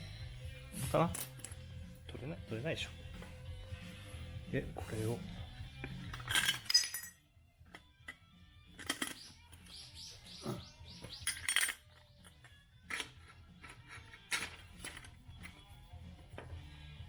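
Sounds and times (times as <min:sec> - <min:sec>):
metal clinks: 0:06.0 - 0:07.2, 0:11.1 - 0:15.1.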